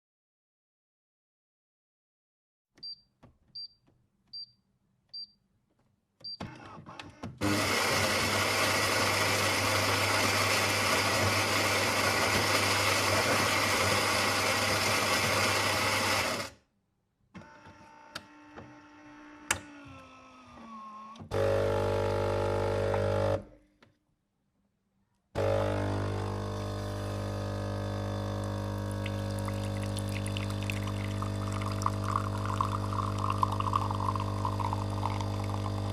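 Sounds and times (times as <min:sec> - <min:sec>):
coffee grinder running: 0:07.4 - 0:16.6, 0:21.3 - 0:23.4, 0:25.4 - 0:35.9
coffee pouring: 0:07.9 - 0:16.2, 0:25.4 - 0:35.9
pump humming: 0:21.3 - 0:23.4, 0:25.4 - 0:35.9
coffee machine beeps: 0:28.2 - 0:35.9.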